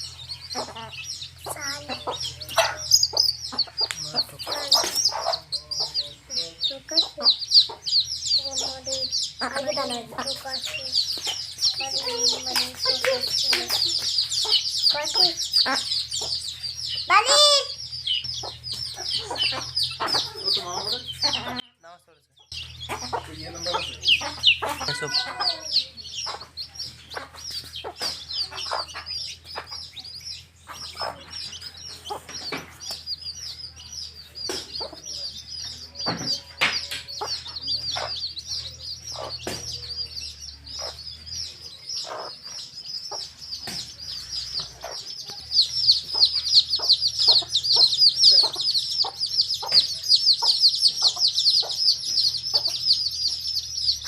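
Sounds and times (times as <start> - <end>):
hen clucking: 0.0 - 21.8, 22.4 - 54.0
baby chicks peeping: 0.0 - 54.0.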